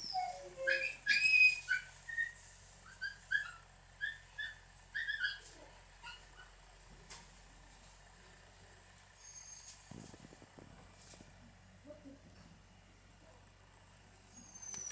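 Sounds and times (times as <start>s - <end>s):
puppy squeaking: 0.0s - 6.6s, 9.2s - 9.8s, 14.4s - 14.9s
puppy whining: 0.0s - 7.2s, 9.2s - 10.0s, 14.3s - 14.9s.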